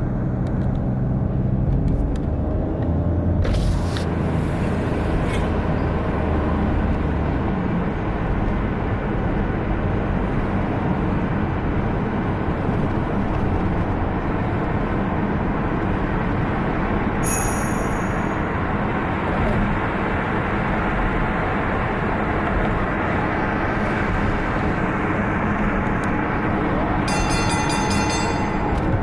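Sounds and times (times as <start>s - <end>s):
car driving in traffic: 0.0s - 29.0s
high-pitched electronic beep: 17.2s - 18.6s.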